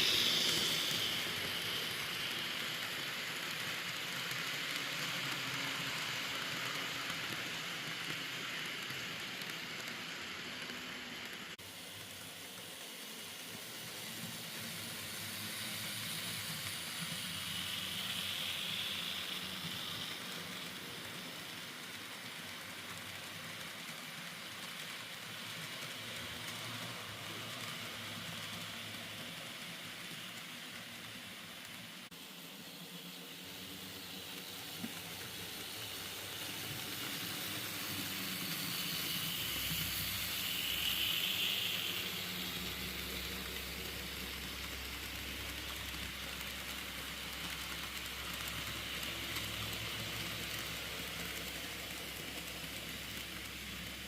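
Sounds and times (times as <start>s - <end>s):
model train wheels on rails: 0.0s - 54.0s.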